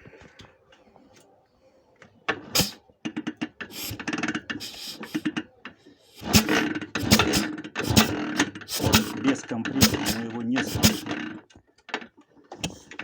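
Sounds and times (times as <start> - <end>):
engine compression puffs: 2.4 - 2.8, 3.6 - 5.4, 6.0 - 11.5
metallic engine knock: 6.2 - 11.4.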